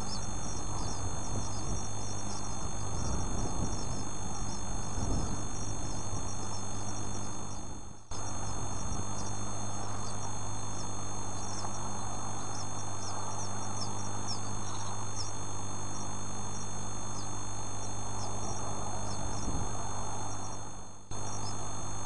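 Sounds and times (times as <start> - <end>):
bird chicks peeping: 0.0 - 21.8
electrical hum and hiss: 0.0 - 22.0.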